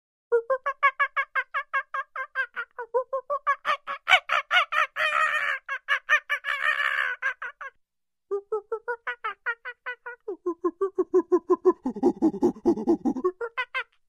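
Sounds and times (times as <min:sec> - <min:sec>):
primate hooting and screaming: 0:10.7 - 0:13.7.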